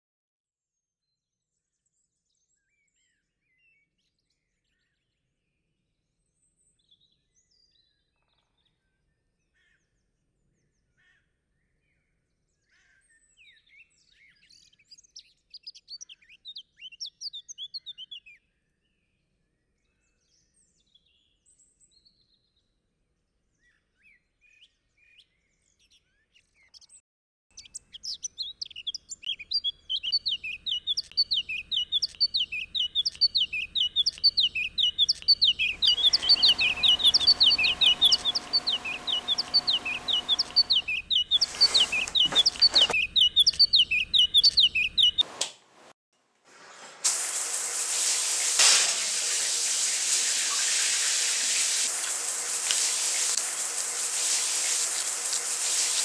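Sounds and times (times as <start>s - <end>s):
birds chirping and singing: 28.2s - 45.2s, 48.0s - 56.0s
low background hum: 34.4s - 43.0s.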